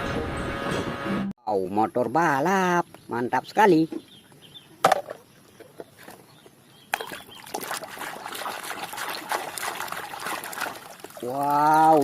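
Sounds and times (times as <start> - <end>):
water running and splashing: 5.6 - 12.0.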